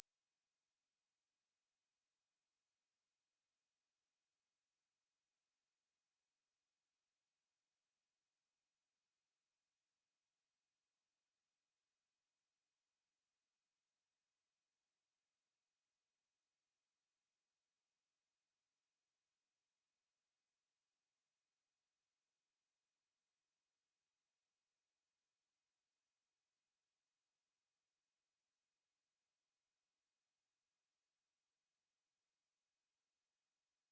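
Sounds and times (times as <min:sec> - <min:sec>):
high-pitched sine test tone: 0:00.0 - 0:05.1, 0:12.0 - 0:33.9.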